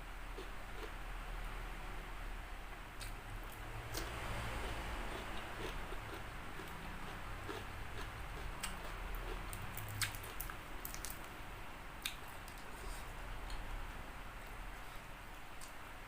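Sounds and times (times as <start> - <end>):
low steady hum: 0.0 - 16.0
chewing crispy fried chicken: 3.0 - 11.4.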